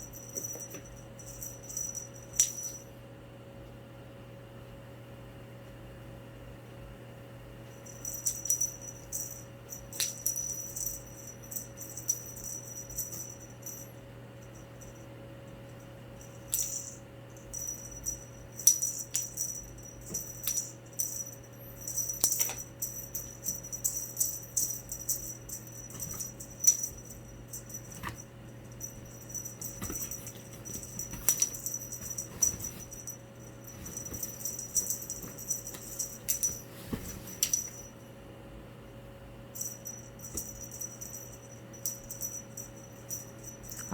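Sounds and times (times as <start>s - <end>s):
cat toy jingling rattle: 7.8s - 13.9s, 16.2s - 37.9s, 39.6s - 43.9s.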